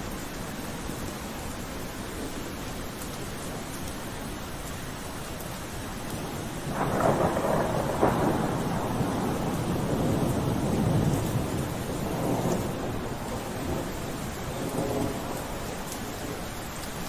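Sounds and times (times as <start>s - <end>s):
steady rain: 0.0s - 17.0s
thunder rumbling: 6.2s - 16.6s
sharp thunder cracks: 6.6s - 15.5s.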